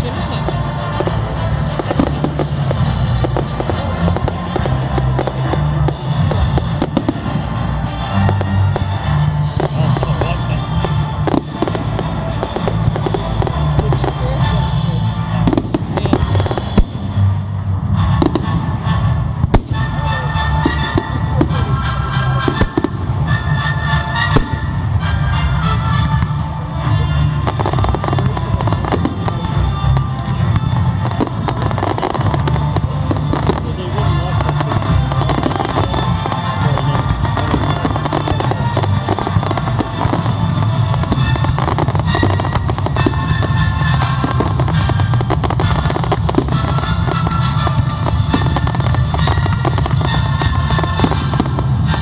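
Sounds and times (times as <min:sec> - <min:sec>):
fireworks bangs and crackling: 0:00.0 - 0:52.0
music over loudspeakers: 0:00.0 - 0:52.0.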